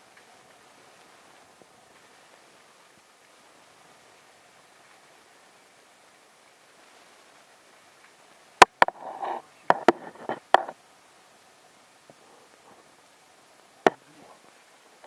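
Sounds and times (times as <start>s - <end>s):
rustling: 6.8s - 10.8s
sharp knocks and clicks: 9.7s - 10.8s.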